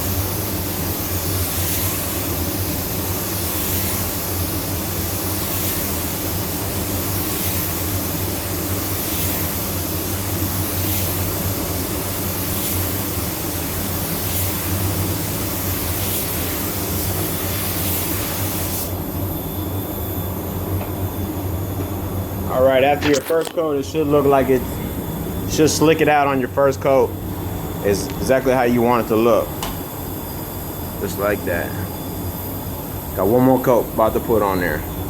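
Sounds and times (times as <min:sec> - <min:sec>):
paint spray gun hissing: 0:00.0 - 0:19.0
steady low hum: 0:00.0 - 0:35.0.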